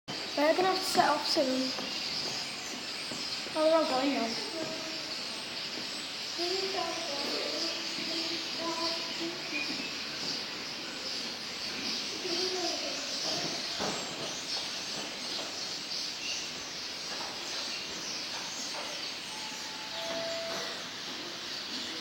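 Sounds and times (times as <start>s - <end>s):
starlings twittering: 0.1s - 22.0s.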